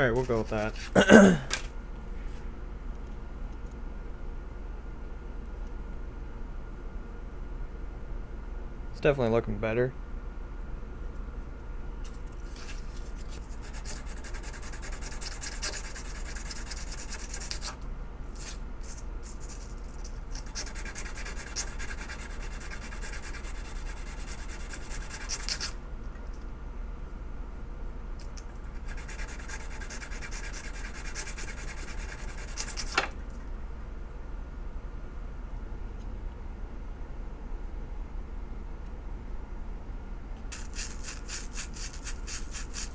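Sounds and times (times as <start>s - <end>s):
scratchy rubbing strokes: 12.4s - 25.8s, 28.7s - 33.0s, 40.5s - 42.9s.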